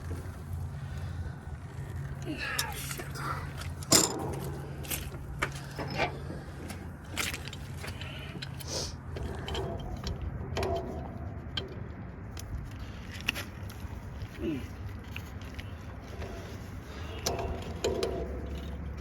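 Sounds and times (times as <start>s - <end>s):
low engine hum: 0.0s - 19.0s
metal tools clinking and knocking: 2.4s - 8.6s, 9.2s - 11.8s, 15.0s - 19.0s
sharp metal clank: 3.9s - 5.0s.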